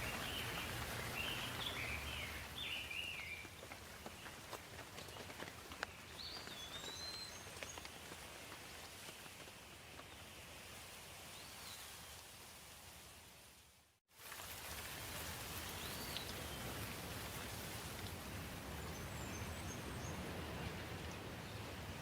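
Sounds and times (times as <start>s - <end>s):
bird chirps: 0.0s - 3.5s
light rain dripping: 0.0s - 22.0s.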